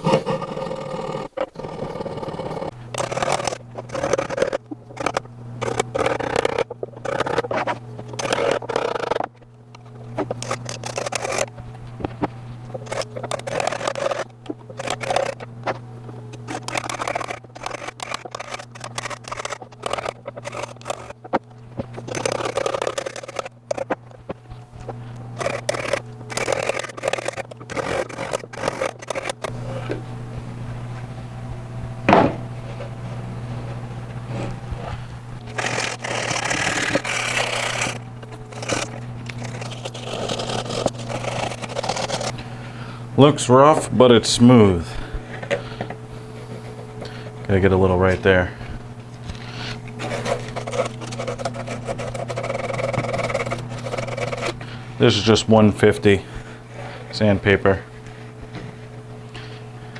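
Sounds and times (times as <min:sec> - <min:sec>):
rasping on wood: 0:00.0 - 0:29.8, 0:34.4 - 0:42.4, 0:49.4 - 0:55.3
steady low hum: 0:00.0 - 0:59.9.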